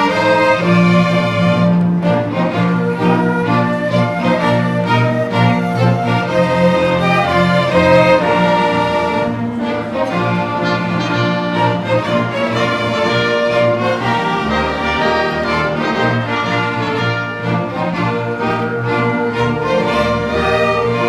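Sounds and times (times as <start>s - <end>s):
string ensemble playing slow tune: 0.0s - 21.0s.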